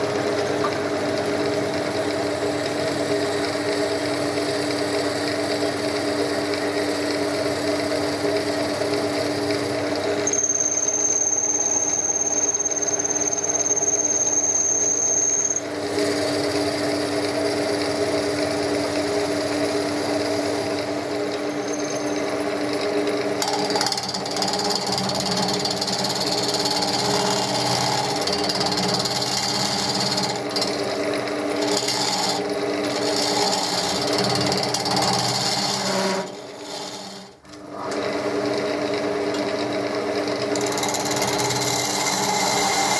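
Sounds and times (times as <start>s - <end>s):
wood lathe motor hum: 0.0s - 42.9s
high steady squeal: 10.2s - 16.6s, 21.5s - 22.4s, 31.5s - 37.4s, 40.6s - 42.9s.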